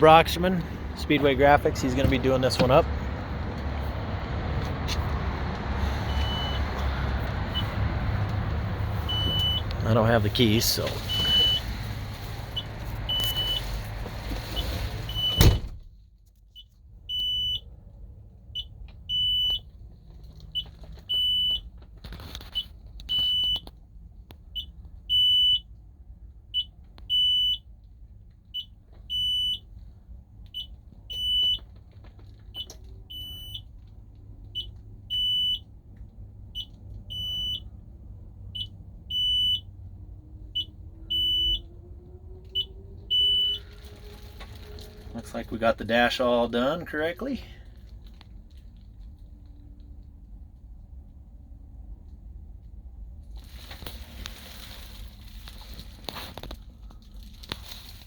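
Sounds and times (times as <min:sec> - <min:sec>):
truck cab warning beeper: 0:00.0 - 0:03.0, 0:06.0 - 0:07.9, 0:09.0 - 0:11.7, 0:12.6 - 0:13.7, 0:14.6 - 0:15.7, 0:17.1 - 0:17.7, 0:18.6 - 0:19.6, 0:24.6 - 0:25.7, 0:26.6 - 0:27.7, 0:28.6 - 0:29.7, 0:30.6 - 0:31.6, 0:32.5 - 0:33.7, 0:34.6 - 0:35.7, 0:36.5 - 0:37.7, 0:38.5 - 0:39.7, 0:40.5 - 0:41.7, 0:42.5 - 0:43.7.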